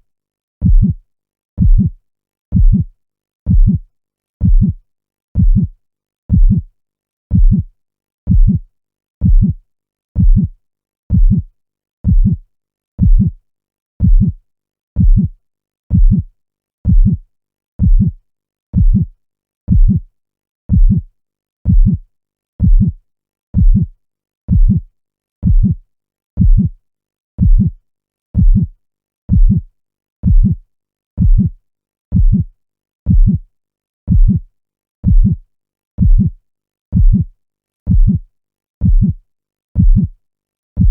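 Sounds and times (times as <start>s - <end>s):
heartbeat double thump: 0.6s - 1.0s, 1.6s - 1.9s, 2.5s - 2.9s, 3.5s - 3.8s, 4.4s - 4.8s, 5.4s - 5.7s, 6.3s - 6.6s, 7.3s - 7.7s, 8.3s - 8.6s, 9.2s - 9.6s, 10.2s - 10.5s, 11.1s - 11.4s, 12.1s - 12.4s, 13.0s - 13.3s, 14.0s - 14.4s, 15.0s - 15.3s, 15.9s - 16.2s, 16.9s - 17.2s, 17.8s - 18.1s, 18.8s - 19.1s, 19.7s - 20.0s, 20.7s - 21.0s, 21.7s - 22.0s, 22.6s - 22.9s, 23.6s - 23.9s, 24.5s - 24.8s, 25.4s - 25.8s, 26.4s - 26.7s, 27.4s - 27.7s, 28.4s - 28.7s, 29.3s - 29.6s, 30.2s - 30.6s, 31.2s - 31.5s, 32.1s - 32.5s, 33.1s - 33.4s, 34.1s - 34.4s, 35.0s - 35.4s, 36.0s - 36.3s, 37.0s - 37.3s, 37.9s - 38.2s, 38.8s - 39.2s, 39.8s - 40.1s.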